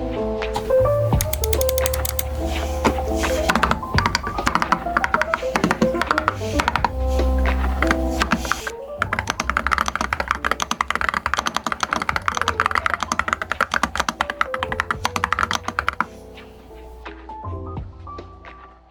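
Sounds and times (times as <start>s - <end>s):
background music: 0.0s - 18.9s
typing on mechanical keyboard: 0.6s - 17.0s.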